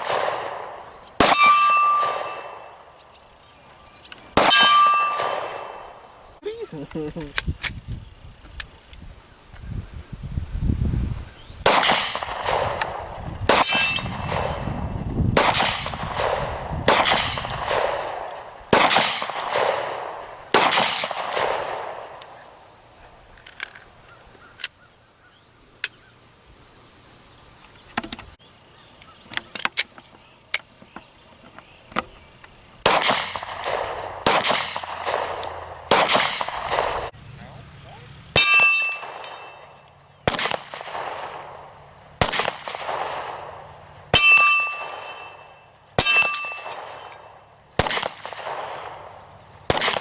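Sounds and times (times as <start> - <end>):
pistol shots: 0.0 - 2.9, 4.4 - 6.0, 11.6 - 22.3, 32.8 - 37.1, 38.4 - 50.0
small gun clicks: 23.3 - 24.8.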